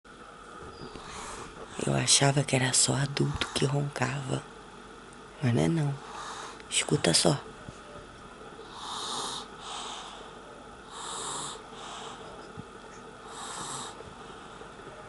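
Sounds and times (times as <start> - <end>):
child snoring: 8.7 - 10.1, 10.9 - 12.2, 13.3 - 14.0.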